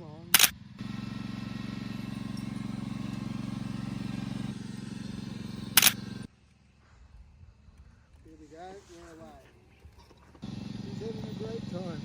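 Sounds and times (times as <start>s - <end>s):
small engine running: 0.0s - 7.0s, 9.3s - 12.0s
sharp click: 5.8s - 6.0s.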